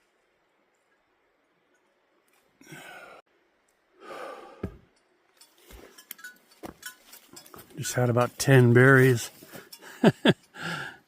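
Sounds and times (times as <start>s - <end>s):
man sighing: 2.6s - 3.2s, 4.0s - 4.8s, 10.6s - 11.0s.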